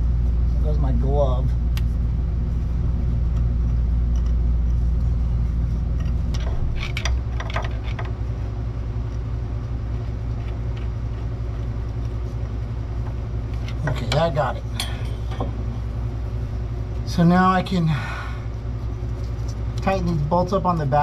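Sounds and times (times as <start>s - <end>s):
low mechanical hum: 0.0s - 21.0s
light metal clinks: 13.8s - 15.5s.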